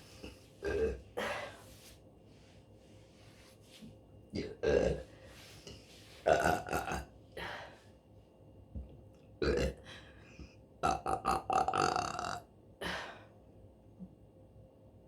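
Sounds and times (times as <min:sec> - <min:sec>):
woman burping: 0:00.6 - 0:01.4, 0:06.3 - 0:07.1.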